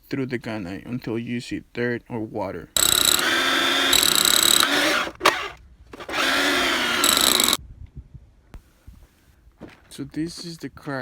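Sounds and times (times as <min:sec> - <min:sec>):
rotary hammer drilling: 0:02.8 - 0:07.6.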